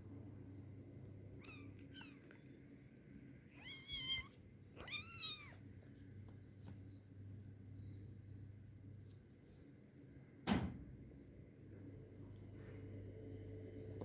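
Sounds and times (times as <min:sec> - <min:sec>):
kitten meowing: 0:01.4 - 0:02.3, 0:03.5 - 0:05.6.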